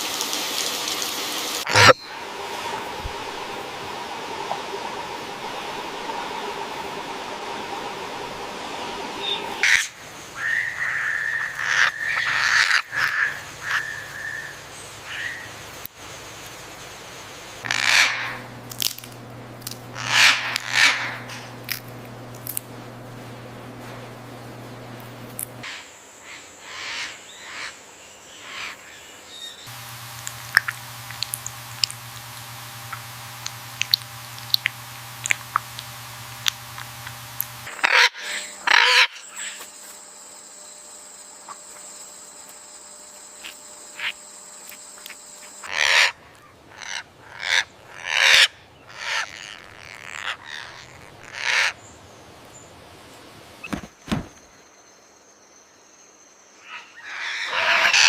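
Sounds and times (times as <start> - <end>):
parrot squawks: 17.6 - 18.4, 20.0 - 21.3, 37.7 - 39.2, 45.6 - 51.8
parrot chirps and ticks: 17.6 - 22.7, 29.7 - 39.1.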